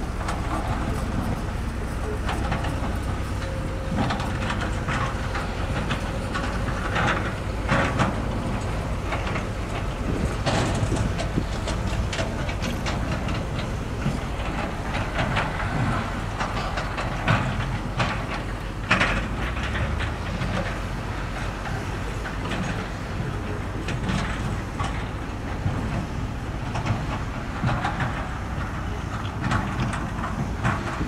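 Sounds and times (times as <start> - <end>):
diesel earthmoving machinery running: 0.0 - 31.0.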